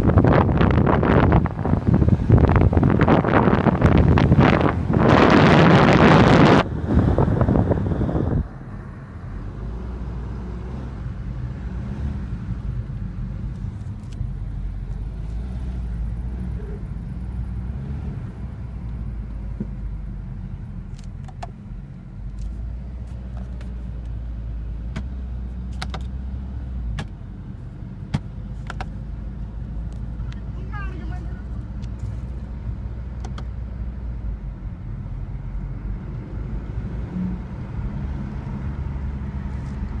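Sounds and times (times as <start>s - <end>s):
wind noise on microphone: 0.0s - 12.8s
car engine rumbling: 0.0s - 40.0s.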